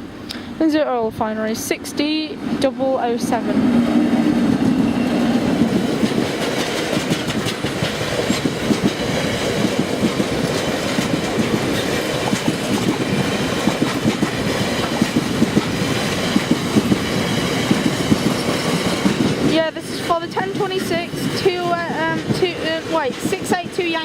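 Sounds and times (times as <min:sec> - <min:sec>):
train rumble: 0:00.0 - 0:24.0
train wheels clattering over rail joints: 0:04.4 - 0:19.6.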